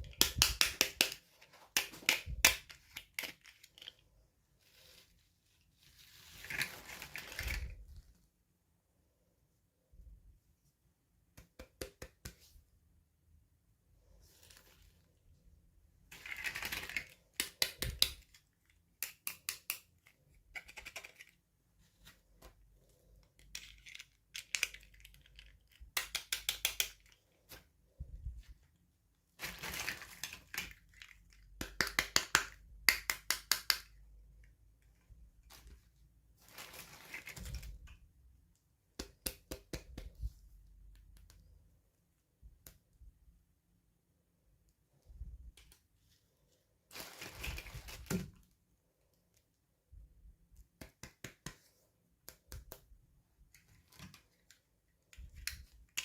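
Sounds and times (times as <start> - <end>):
packaging crinkling and rustling: 2.6 - 7.9, 29.4 - 31.4, 35.4 - 37.9, 46.9 - 48.5.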